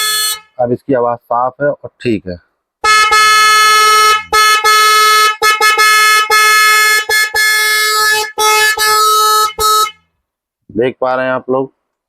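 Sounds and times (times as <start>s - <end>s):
electric horn honking: 0.0s - 0.6s, 2.8s - 10.1s.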